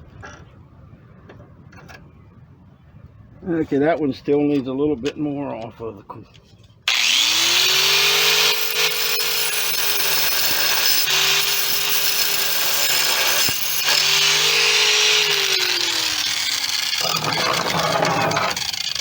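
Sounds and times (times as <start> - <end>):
angle grinder cutting metal: 6.9 - 19.0.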